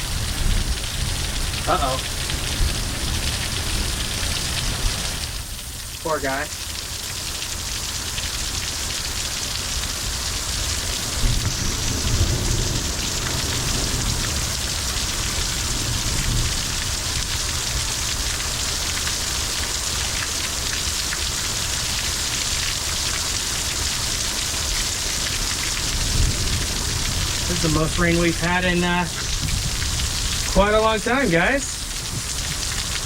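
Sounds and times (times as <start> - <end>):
heavy rain pouring: 0.0 - 33.0
thunder rumbling: 11.1 - 16.8, 25.8 - 33.0.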